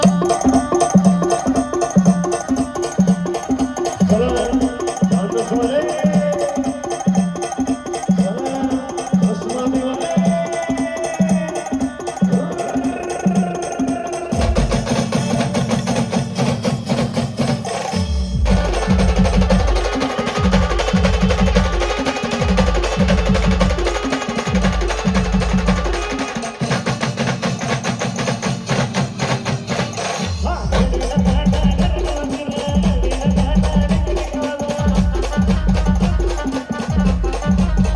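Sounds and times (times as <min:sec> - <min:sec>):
fast dense drum rhythm: 0:00.0 - 0:37.9
brass band playing: 0:18.0 - 0:27.3, 0:33.8 - 0:37.9.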